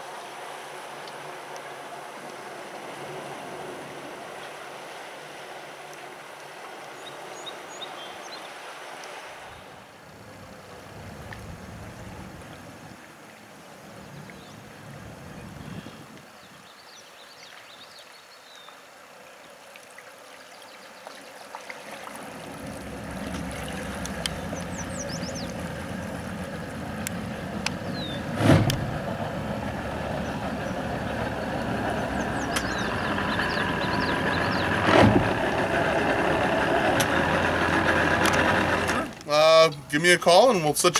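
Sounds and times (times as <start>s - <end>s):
outboard motor running: 0.0s - 8.2s, 9.6s - 12.9s, 21.8s - 39.4s
loud thump: 28.4s - 28.9s.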